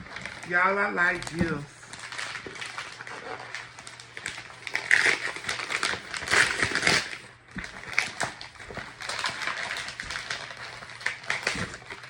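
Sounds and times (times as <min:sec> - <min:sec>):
wrapping paper tearing and crumpling: 0:00.0 - 0:12.0.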